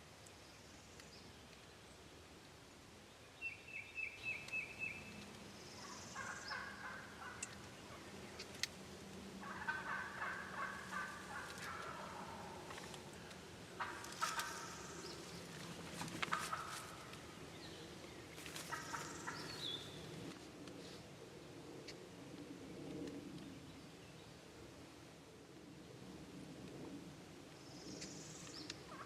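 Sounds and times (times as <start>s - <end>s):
turkeys gobbling: 6.2s - 8.0s, 9.4s - 13.2s, 13.8s - 15.2s, 16.0s - 17.2s, 18.7s - 19.6s.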